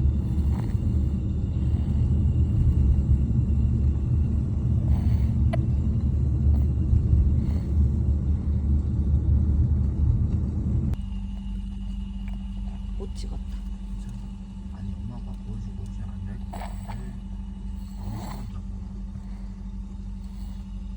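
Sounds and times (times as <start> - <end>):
road rumble inside car: 0.0 - 17.2
steady cabin hum: 0.0 - 20.9.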